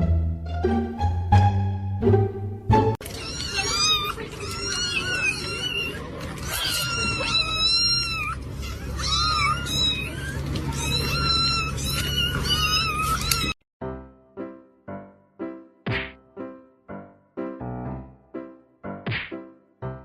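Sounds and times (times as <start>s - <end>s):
cat meowing: 3.0s - 13.6s.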